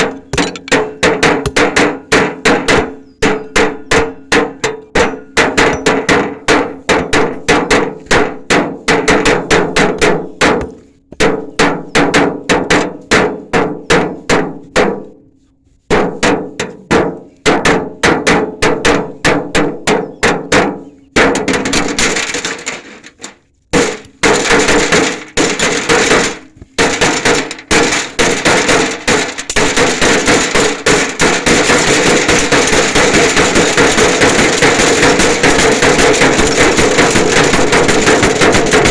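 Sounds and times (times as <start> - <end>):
hammer driving nails: 0.0 - 7.1, 21.4 - 38.9.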